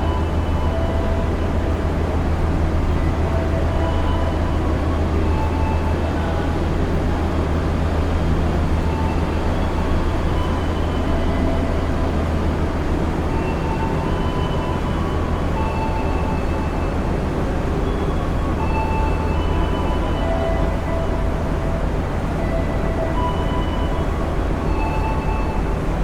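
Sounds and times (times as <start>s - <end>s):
train rumbling on rails: 0.0s - 26.0s.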